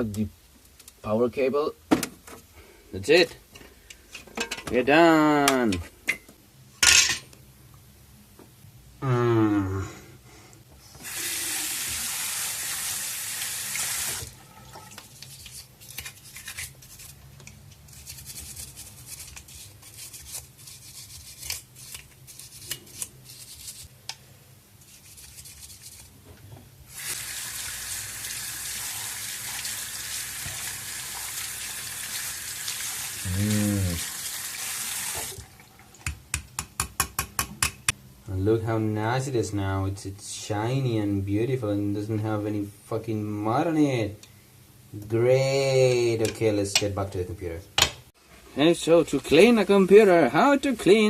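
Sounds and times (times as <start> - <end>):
tap water running into sink: 11.0 - 15.0, 27.0 - 33.2, 34.0 - 35.6.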